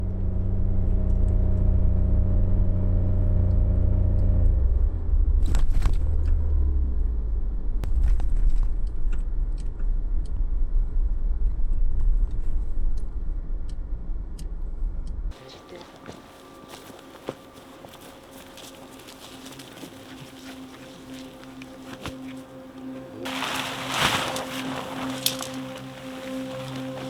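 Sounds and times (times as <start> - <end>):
car engine drone: 0.0 - 8.0, 14.1 - 27.0
road rumble: 15.4 - 27.0.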